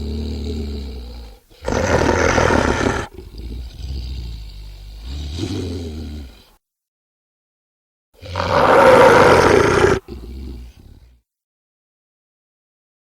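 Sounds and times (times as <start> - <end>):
dinosaur roar: 0.0 - 6.4, 8.2 - 11.1
dinosaur growl: 0.0 - 6.5, 8.2 - 11.2.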